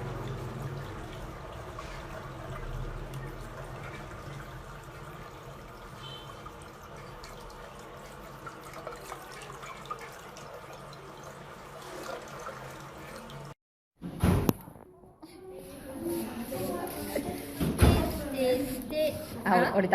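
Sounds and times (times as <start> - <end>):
small drips: 0.0 - 13.6
water trickling: 0.0 - 13.6.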